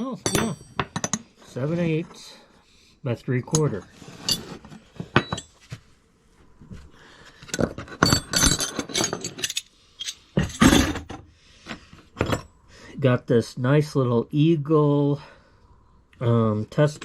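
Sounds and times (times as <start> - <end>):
wrenches clinking and clattering: 0.0 - 1.6, 3.4 - 5.6, 7.4 - 11.2, 12.1 - 12.5.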